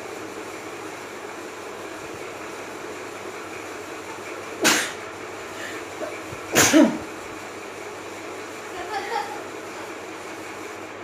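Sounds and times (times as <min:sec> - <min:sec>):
woman sneezing: 0:06.6 - 0:07.0.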